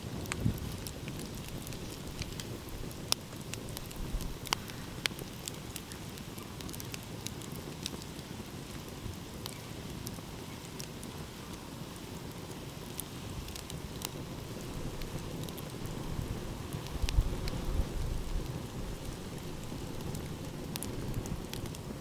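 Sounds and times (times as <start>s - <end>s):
wood fire crackling and popping: 0.0s - 22.0s.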